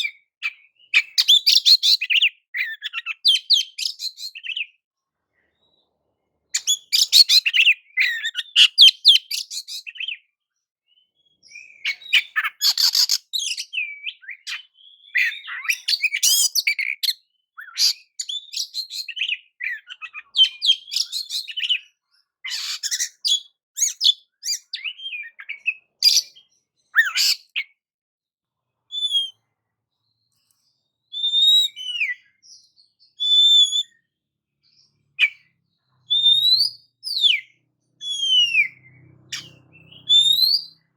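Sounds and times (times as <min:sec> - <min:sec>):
songbird singing: 0:00.0 - 0:27.8, 0:28.8 - 0:40.9.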